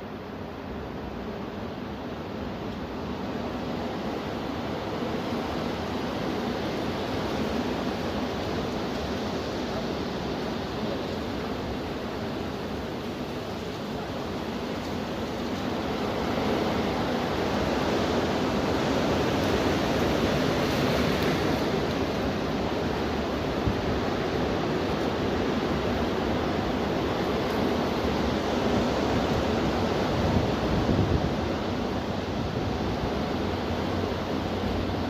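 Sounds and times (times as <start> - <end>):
high wind gusting: 0.0 - 35.0
wind buffeting microphone: 12.7 - 35.0.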